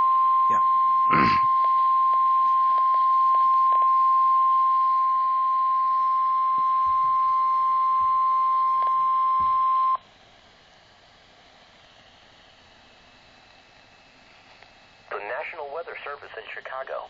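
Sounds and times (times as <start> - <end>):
high-pitched alarm tone over radio: 0.0 - 10.0
faint radio hiss: 4.8 - 17.0.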